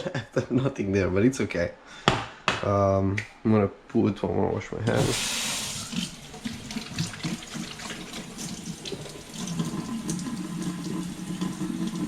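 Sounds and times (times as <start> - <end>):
tap running into sink: 4.9 - 12.0.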